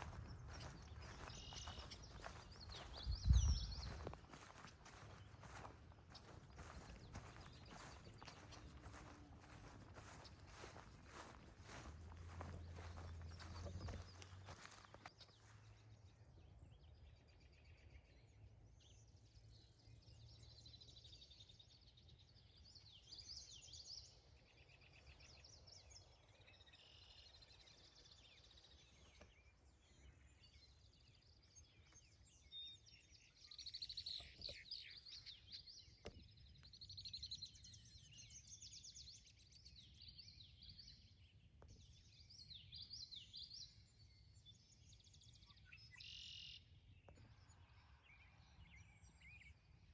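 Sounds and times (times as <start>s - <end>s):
low rumble of wind: 0.0s - 17.3s
wild birds singing and calling: 0.0s - 21.0s, 21.8s - 49.9s.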